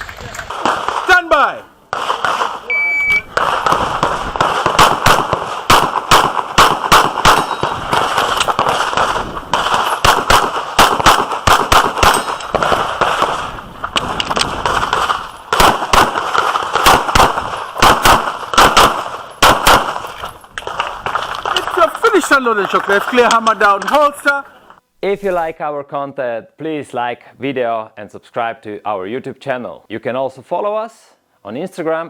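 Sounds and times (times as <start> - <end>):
pistol shots: 0.5 - 24.0.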